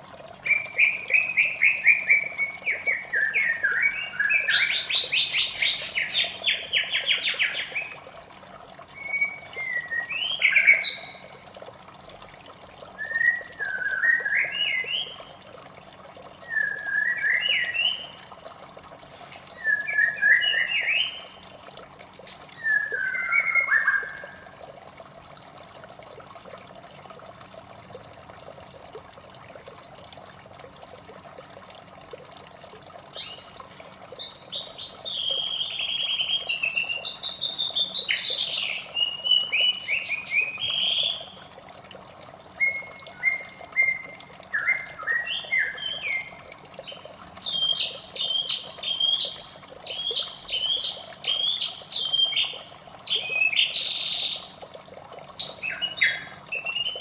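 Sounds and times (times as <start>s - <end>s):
running water: 0.0s - 57.0s
bird singing: 9.0s - 11.2s, 19.3s - 21.3s, 22.6s - 24.4s, 34.2s - 41.4s, 42.6s - 46.3s, 46.9s - 54.5s, 55.4s - 57.0s.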